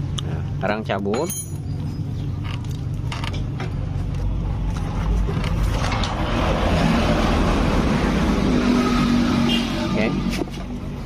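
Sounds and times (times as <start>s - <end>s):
vehicle engine running: 0.0s - 8.7s.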